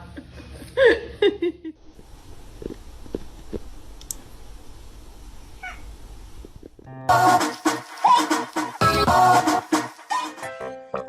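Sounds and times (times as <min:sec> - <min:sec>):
cat meowing: 0:05.6 - 0:05.9
loud music: 0:07.1 - 0:11.0.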